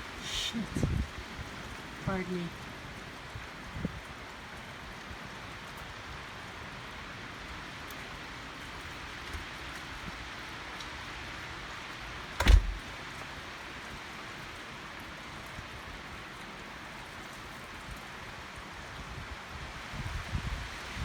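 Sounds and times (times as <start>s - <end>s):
thumps: 12.4s - 12.9s.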